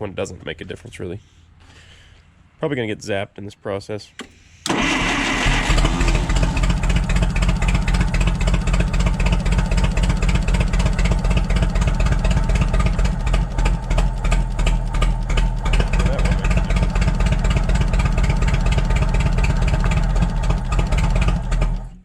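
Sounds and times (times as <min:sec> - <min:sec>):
forklift engine idling unevenly: 0:04.6 - 0:22.0.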